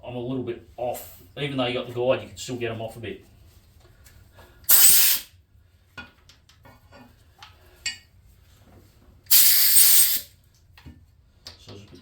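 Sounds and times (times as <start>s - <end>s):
loud hissing blast: 4.7s - 5.3s, 9.3s - 10.3s.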